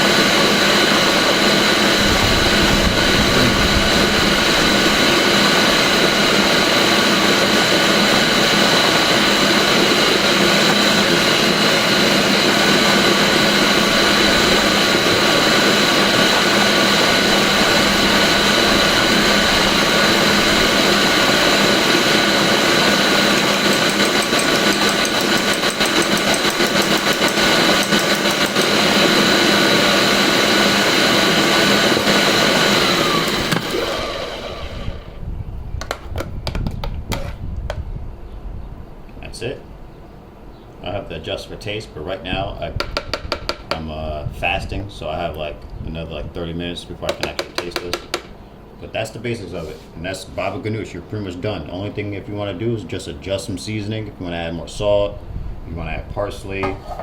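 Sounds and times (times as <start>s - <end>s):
blender motor running: 0.0s - 35.2s.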